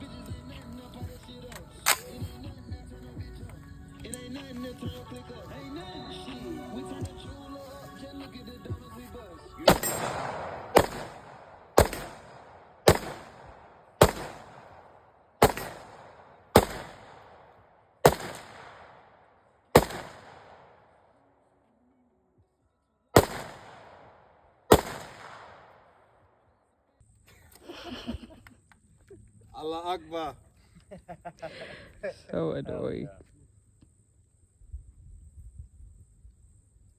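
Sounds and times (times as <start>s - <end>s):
gunshots with echo: 9.6s - 21.0s, 23.2s - 26.0s.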